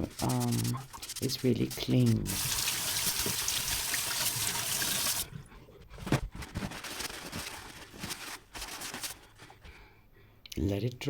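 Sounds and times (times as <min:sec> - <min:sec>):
water running from a tap: 0:02.2 - 0:05.3.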